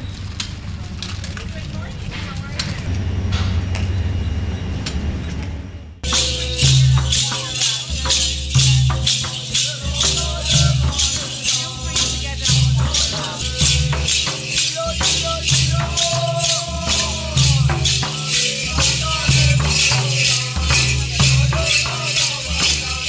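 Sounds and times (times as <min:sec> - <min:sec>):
pulsing bass line: 0:06.0 - 0:23.0
shaker beat: 0:06.0 - 0:23.0.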